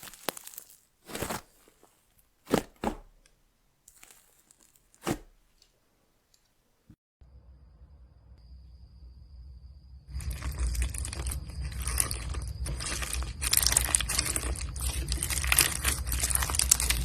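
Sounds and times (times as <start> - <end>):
slime crackling crunches: 0.0 - 3.2, 3.8 - 5.7, 10.2 - 17.0
faint steady hum: 5.5 - 17.0.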